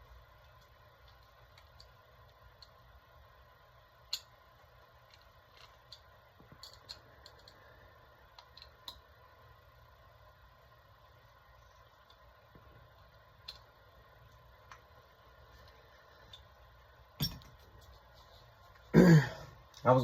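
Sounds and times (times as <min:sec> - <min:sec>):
low steady hum: 0:00.0 - 0:20.0
metal parts clicking: 0:05.0 - 0:07.6.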